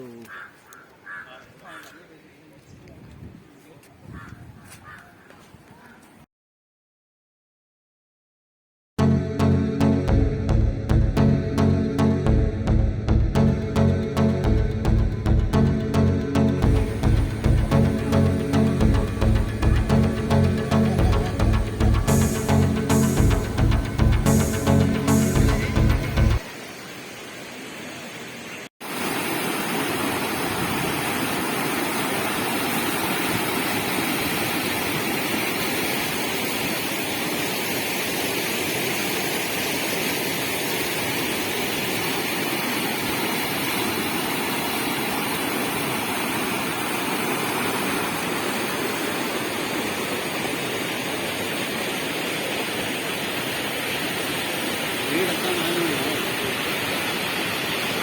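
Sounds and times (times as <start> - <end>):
floodwater rushing: 13.2 - 58.0.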